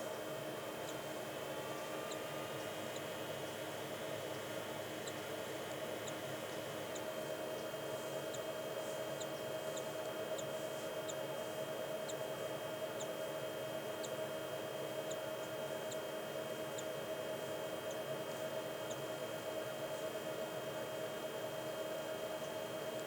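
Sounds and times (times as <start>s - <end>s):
steady hum: 0.0s - 23.0s.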